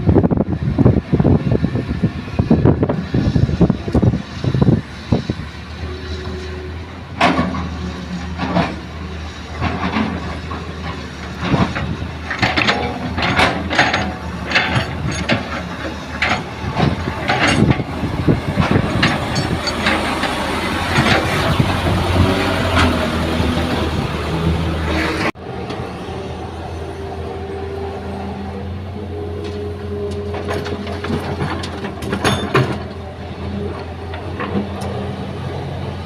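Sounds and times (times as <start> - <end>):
diesel engine running: 0.0 - 36.0
gravel clanking into truck: 30.4 - 33.0.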